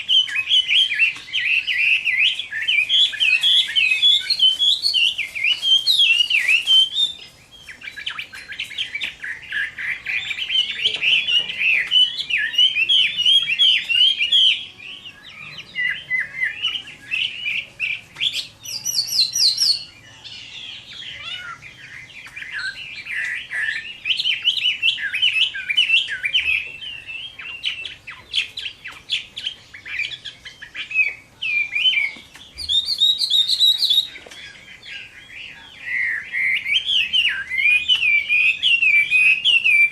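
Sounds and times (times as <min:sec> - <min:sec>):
bird singing whistled phrases: 0:00.0 - 0:39.9.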